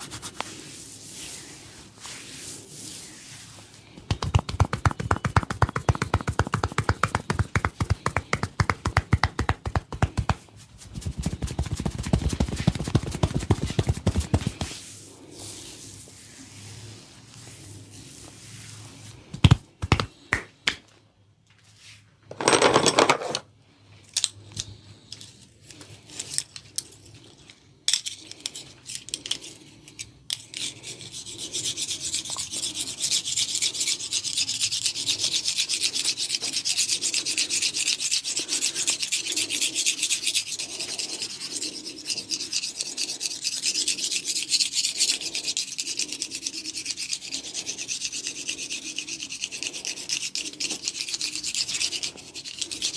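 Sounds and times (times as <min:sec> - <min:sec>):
hands rubbing oiled hair: 0:00.0 - 0:20.5, 0:35.0 - 0:52.9.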